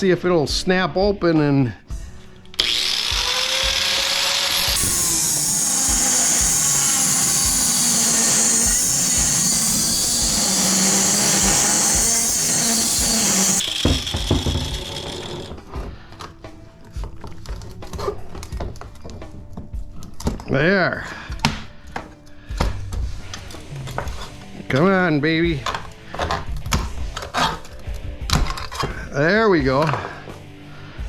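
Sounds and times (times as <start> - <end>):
power tool cutting metal: 2.5 - 15.6.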